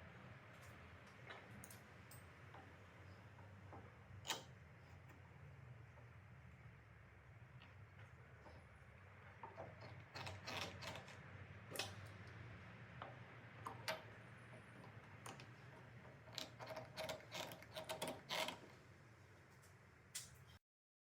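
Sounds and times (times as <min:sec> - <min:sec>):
parts clicking and knocking: 0:09.3 - 0:18.7.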